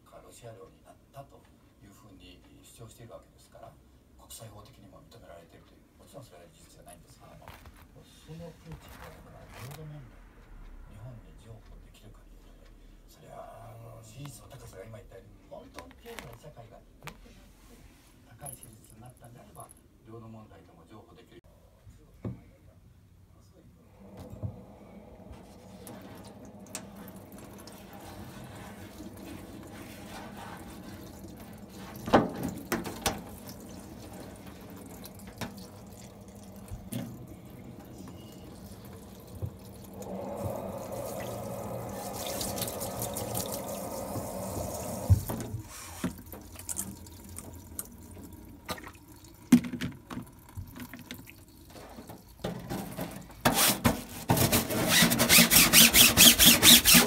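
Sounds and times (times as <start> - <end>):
tap water running into sink: 25.4 - 53.5
knocks and clatters of handling: 49.5 - 55.2.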